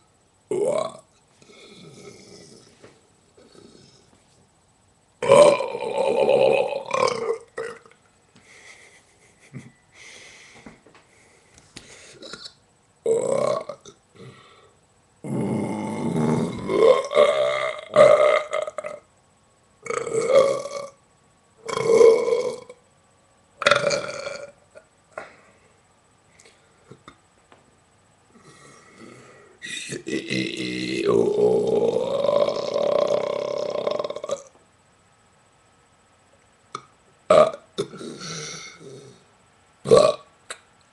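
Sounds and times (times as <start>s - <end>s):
person burping: 0.5s - 2.6s, 5.2s - 8.0s, 12.2s - 14.5s, 15.2s - 19.0s, 19.8s - 21.0s, 21.6s - 22.8s, 23.6s - 25.4s, 28.4s - 34.6s, 36.8s - 39.2s, 39.8s - 40.3s.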